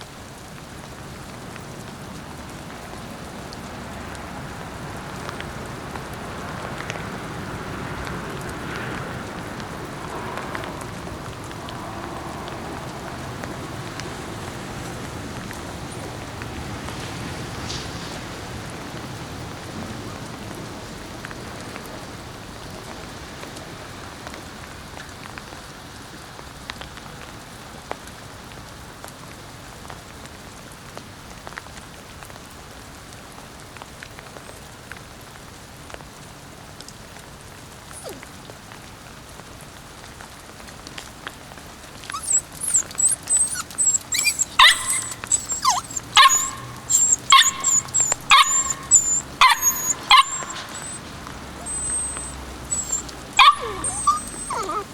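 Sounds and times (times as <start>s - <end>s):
puppy barking: 38.0s - 38.3s, 42.1s - 54.9s.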